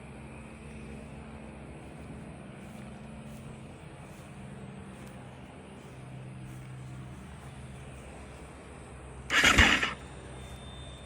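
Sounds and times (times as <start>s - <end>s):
motorcycle engine idling: 9.3s - 10.2s.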